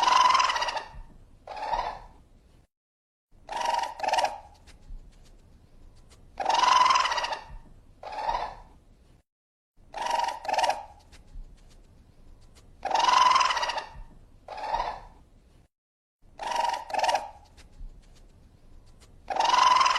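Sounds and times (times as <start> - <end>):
raccoon calling: 0.0 - 2.1, 3.5 - 4.6, 6.0 - 8.7, 9.9 - 11.2, 12.5 - 15.2, 16.4 - 17.6, 18.9 - 19.9.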